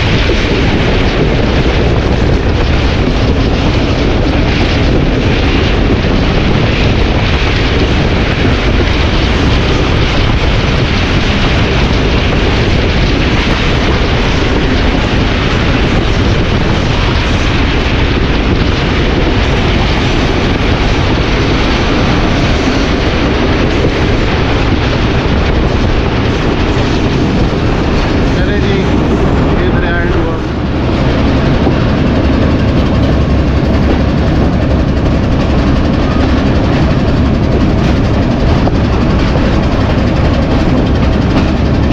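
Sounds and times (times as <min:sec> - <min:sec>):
diesel locomotive engine running: 0:00.0 - 0:41.9.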